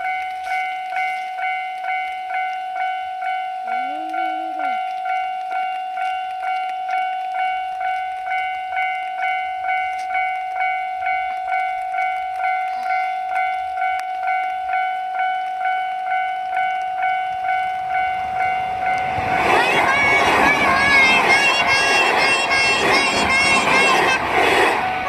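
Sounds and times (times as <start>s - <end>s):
level crossing alarm dinging: 17.1s - 25.0s.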